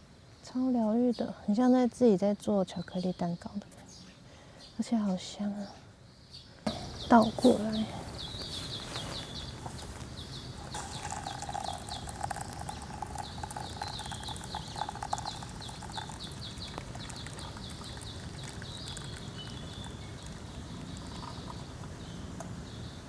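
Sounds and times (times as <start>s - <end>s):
liquid pouring: 10.6s - 22.0s.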